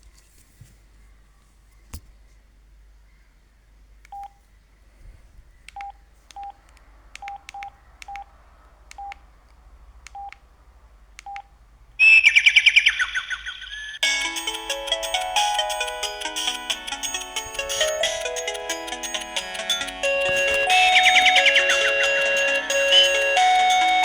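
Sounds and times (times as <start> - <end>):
phone keypad beeps: 4.1 - 4.4, 5.7 - 6.6, 7.2 - 8.3, 9.0 - 9.2, 10.1 - 10.4, 11.2 - 11.5, 19.8 - 24.0
polyphonic ringtone: 14.0 - 24.0.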